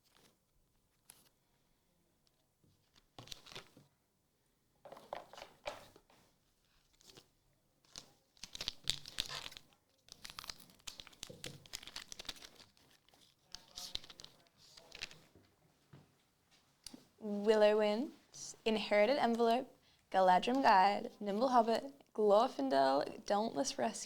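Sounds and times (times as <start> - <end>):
plastic wrapper tearing and crinkling: 7.9 - 15.2.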